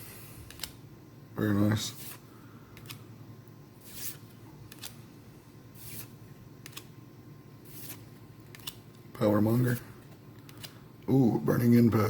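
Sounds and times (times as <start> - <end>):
cards sliding swishes: 0.0 - 0.8, 1.9 - 3.1, 3.8 - 7.0, 7.6 - 8.9, 9.5 - 10.8.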